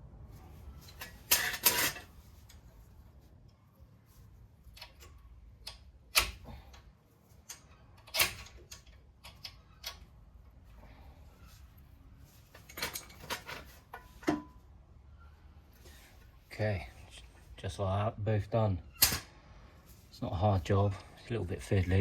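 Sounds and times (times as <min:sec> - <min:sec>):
metallic clicks and knocks: 0:04.7 - 0:10.2.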